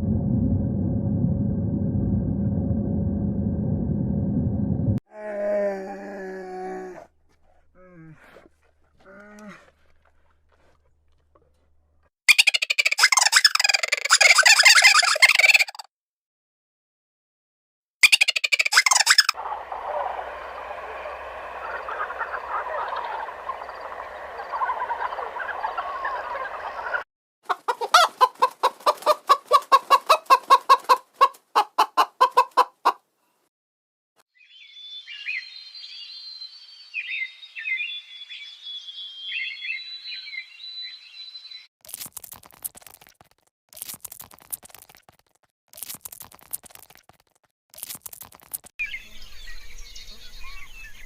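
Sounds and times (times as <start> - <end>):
high chirping bird calls: 18.0 - 27.0, 34.4 - 41.7
chicken clucking: 18.8 - 33.0.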